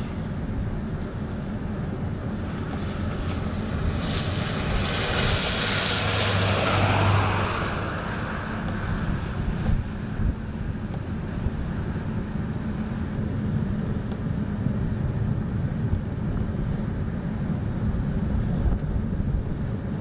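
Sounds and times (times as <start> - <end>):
vehicle tyre hiss passing: 0.0 - 12.0
low rumble of traffic: 0.0 - 20.0.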